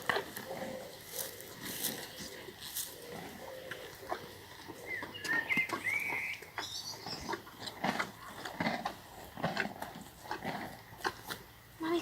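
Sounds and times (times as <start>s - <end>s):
crunching clicks and rustles: 0.0s - 11.6s
bird chirping: 4.7s - 7.4s.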